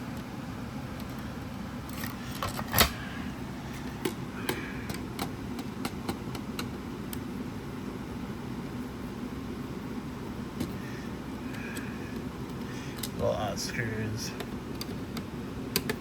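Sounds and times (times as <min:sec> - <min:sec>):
low background hum: 0:00.0 - 0:16.0.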